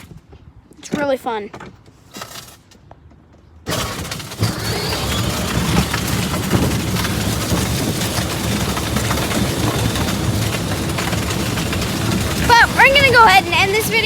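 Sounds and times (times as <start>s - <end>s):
toy car wheels rumbling on pavement: 3.6s - 14.0s.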